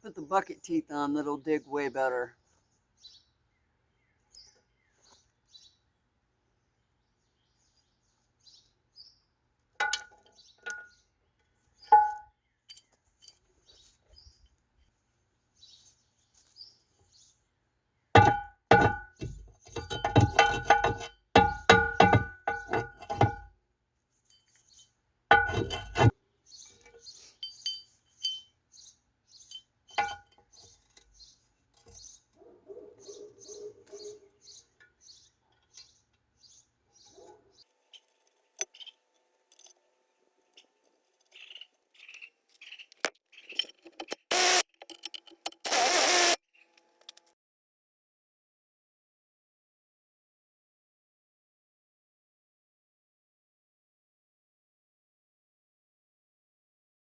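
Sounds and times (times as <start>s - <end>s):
metal-on-metal clinks: 9.6s - 10.9s, 11.9s - 13.5s, 18.2s - 23.5s, 24.3s - 26.1s, 26.7s - 28.6s, 29.4s - 30.7s.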